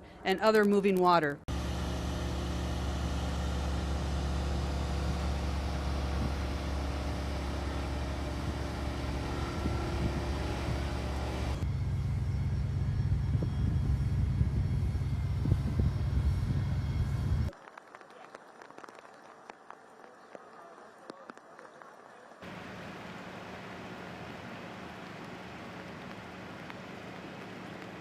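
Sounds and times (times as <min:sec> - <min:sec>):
low engine rumble: 0:01.5 - 0:17.5, 0:22.4 - 0:28.0.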